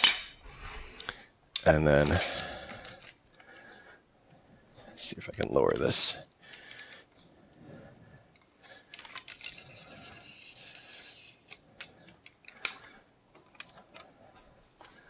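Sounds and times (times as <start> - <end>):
metal scraping against metal: 9.2 - 11.6.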